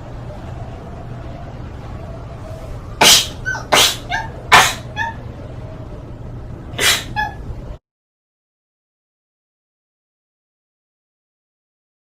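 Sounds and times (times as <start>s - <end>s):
sharp sneezes: 3.0s - 5.0s, 6.8s - 7.4s.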